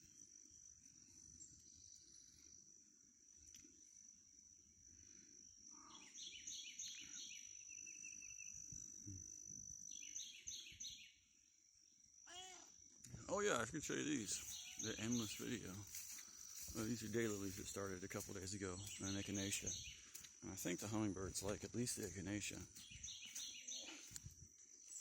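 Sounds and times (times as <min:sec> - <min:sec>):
bird singing: 0:00.0 - 0:02.8, 0:05.7 - 0:11.4, 0:13.5 - 0:25.0.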